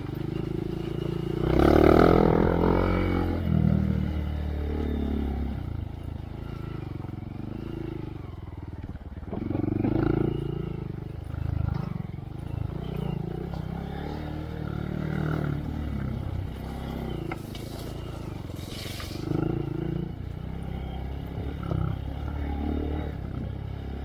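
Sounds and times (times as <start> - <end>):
small motorcycle engine revving: 0.0 - 24.0
brief hiss: 18.6 - 19.3.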